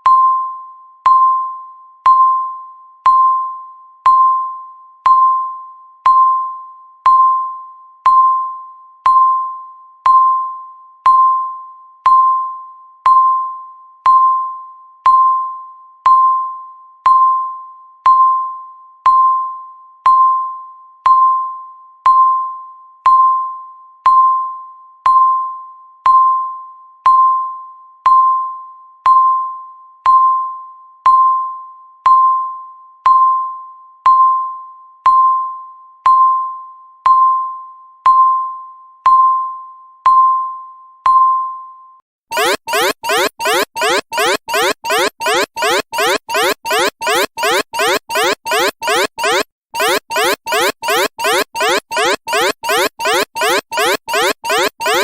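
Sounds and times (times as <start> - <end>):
timer beeps: 42.3 - 55.0.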